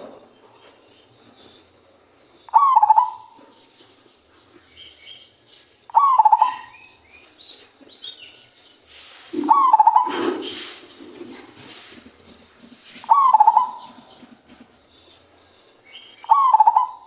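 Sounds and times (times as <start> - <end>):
small birds chirping: 0.0 - 17.0
dove cooing: 2.5 - 3.5, 5.9 - 6.8, 9.3 - 14.4, 16.2 - 17.0.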